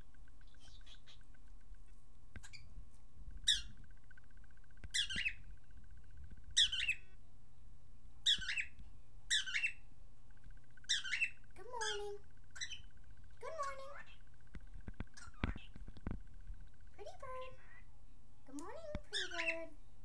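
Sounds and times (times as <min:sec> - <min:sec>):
cockatiel calls: 0:00.5 - 0:01.3, 0:03.4 - 0:03.8, 0:04.8 - 0:05.4, 0:06.6 - 0:07.1, 0:08.2 - 0:09.8, 0:10.8 - 0:12.9.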